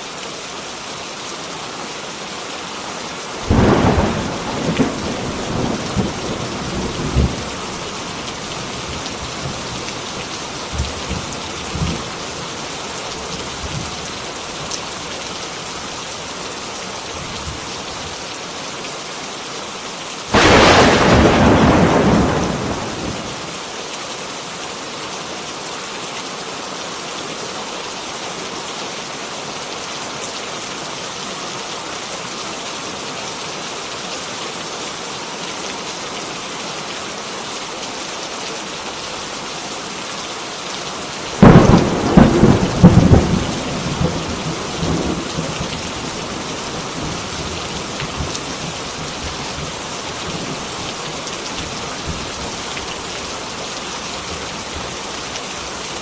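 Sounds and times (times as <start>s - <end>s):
heavy rain falling: 0.0s - 56.0s
thunderclaps: 20.4s - 23.4s, 41.4s - 46.4s.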